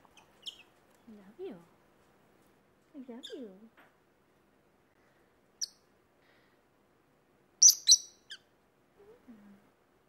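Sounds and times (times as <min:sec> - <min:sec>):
lovebirds chirping shrilly: 0:07.6 - 0:08.4.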